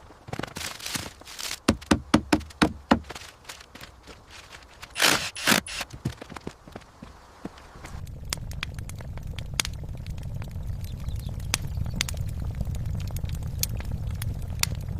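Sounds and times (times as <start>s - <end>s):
fire crackling: 0.0s - 14.9s
low rumble: 7.6s - 14.9s.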